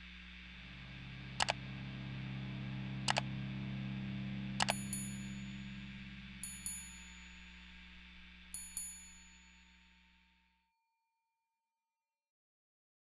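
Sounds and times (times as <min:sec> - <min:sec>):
low drone: 0:00.0 - 0:09.2
ringing chime hits: 0:04.6 - 0:05.6, 0:06.4 - 0:07.7, 0:08.6 - 0:09.8.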